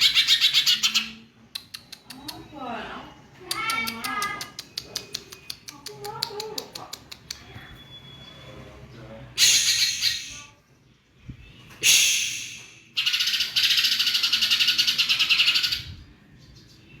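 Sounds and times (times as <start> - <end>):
bird harsh hissing rasps: 9.4 - 10.5, 11.8 - 13.4.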